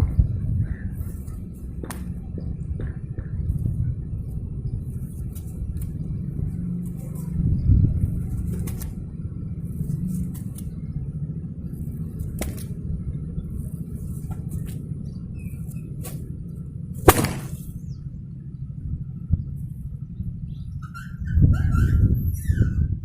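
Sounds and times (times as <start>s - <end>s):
steady low rumble: 0.0s - 20.7s
whip cracking: 17.0s - 17.7s.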